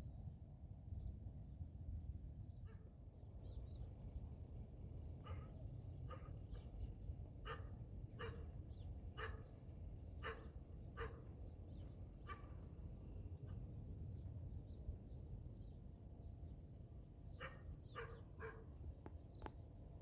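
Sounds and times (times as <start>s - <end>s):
dog barking: 5.2s - 6.4s, 7.4s - 8.4s, 9.2s - 9.5s, 10.2s - 11.2s, 17.4s - 18.7s.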